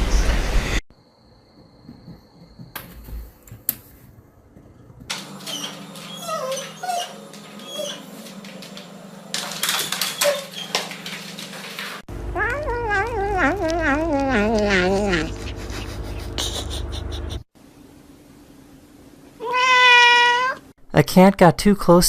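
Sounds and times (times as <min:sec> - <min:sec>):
pet whimpering squeaks: 0:05.4 - 0:08.1, 0:09.8 - 0:11.0.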